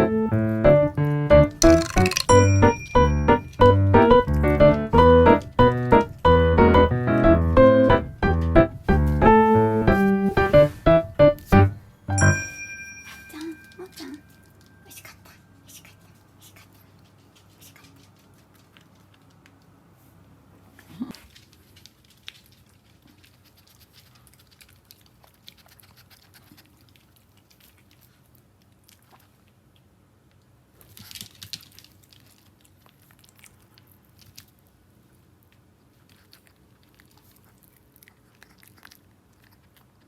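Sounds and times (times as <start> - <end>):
dog chewing food: 21.2 - 29.9, 30.8 - 40.0.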